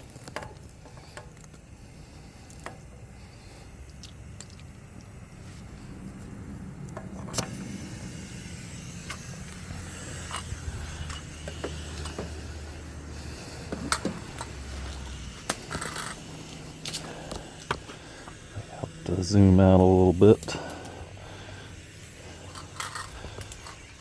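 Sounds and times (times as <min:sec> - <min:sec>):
air hose fittings clicking: 0:00.0 - 0:07.9, 0:09.0 - 0:12.4, 0:13.6 - 0:18.4, 0:22.4 - 0:24.0
low steady hum: 0:00.0 - 0:24.0.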